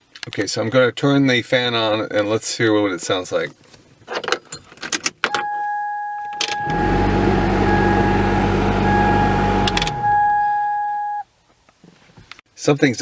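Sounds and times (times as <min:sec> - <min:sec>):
blower fan rushing hum: 0:06.4 - 0:11.2
high-pitched whine: 0:06.6 - 0:11.2.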